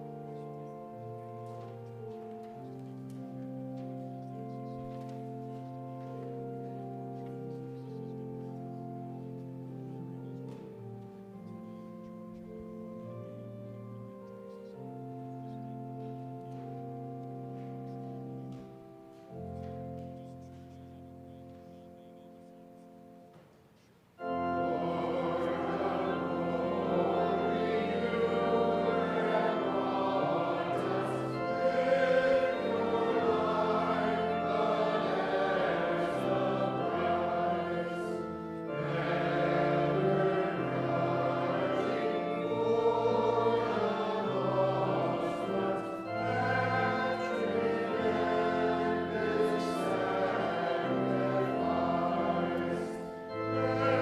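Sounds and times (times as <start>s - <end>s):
congregation singing a hymn: 0.0s - 23.4s, 24.2s - 54.0s
organ accompaniment: 0.0s - 54.0s.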